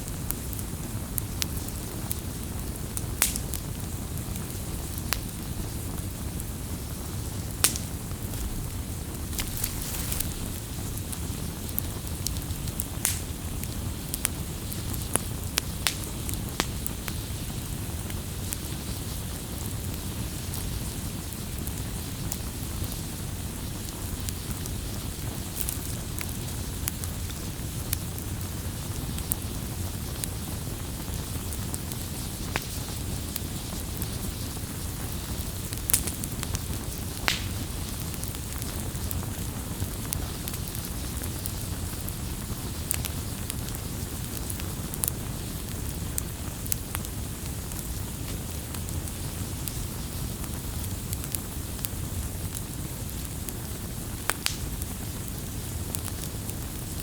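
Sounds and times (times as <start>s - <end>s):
fire crackles and pops: 0.0s - 57.0s
wood fire rumbling: 0.0s - 57.0s.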